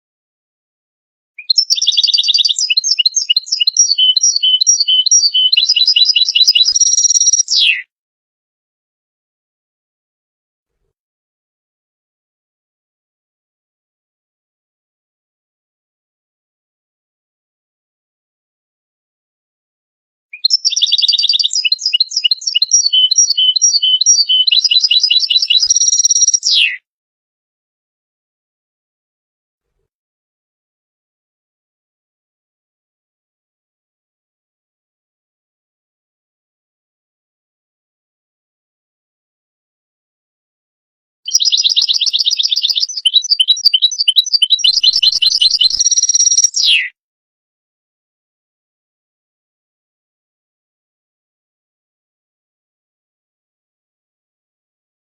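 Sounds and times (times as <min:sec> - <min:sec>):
goldfinch singing: 0:01.4 - 0:07.8, 0:20.4 - 0:26.7, 0:41.3 - 0:46.9
finch twittering song: 0:01.4 - 0:07.9, 0:20.4 - 0:26.8, 0:41.3 - 0:46.9.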